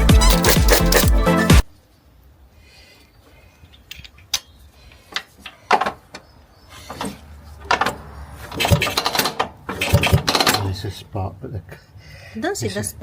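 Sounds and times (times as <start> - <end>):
metal tools clicking and knocking: 0.0 - 1.2.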